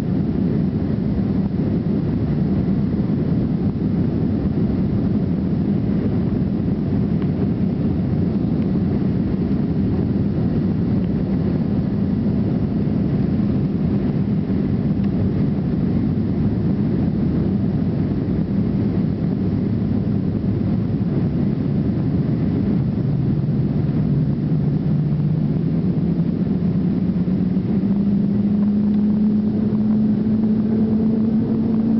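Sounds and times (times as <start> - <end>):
jet engines droning: 0.0 - 31.9
low tone rising in pitch: 22.1 - 31.9.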